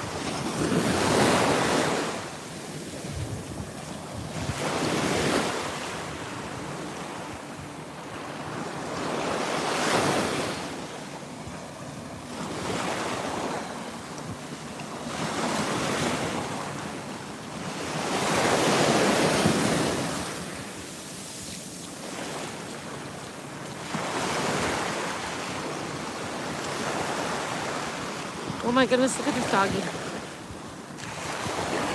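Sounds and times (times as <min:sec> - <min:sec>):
waves breaking on beach: 0:00.0 - 0:31.9
wind buffeting microphone: 0:02.8 - 0:07.8.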